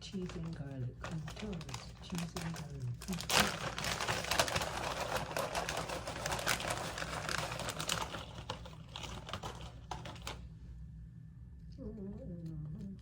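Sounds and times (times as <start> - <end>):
bag crackling and rustling: 0.2 - 10.4.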